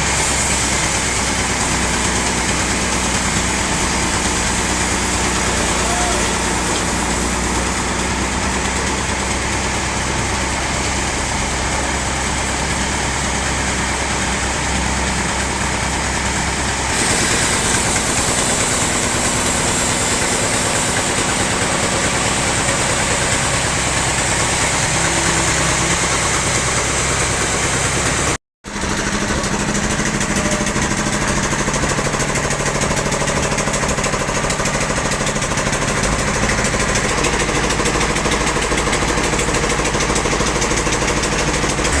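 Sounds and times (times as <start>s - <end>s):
log saw cutting: 0.0s - 42.0s
sawmill engine: 0.0s - 42.0s.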